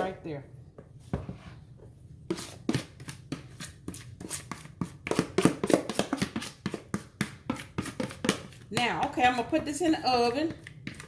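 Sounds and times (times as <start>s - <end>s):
spoon tapping mixing bowl: 4.6s - 11.0s.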